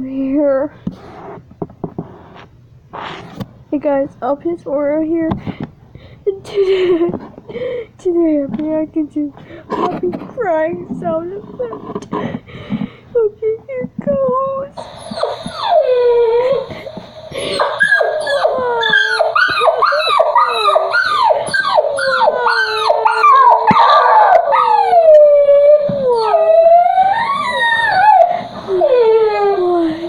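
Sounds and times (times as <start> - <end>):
puppy whimpering and whining: 14.8 - 30.0.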